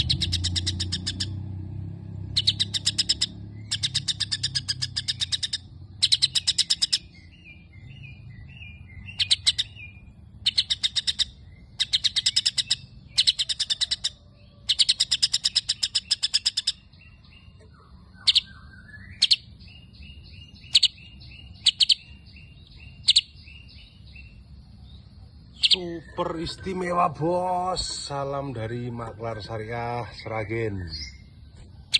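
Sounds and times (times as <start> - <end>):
bird chattering trills: 0.0 - 31.9
soft repeated bird calls: 0.0 - 31.9.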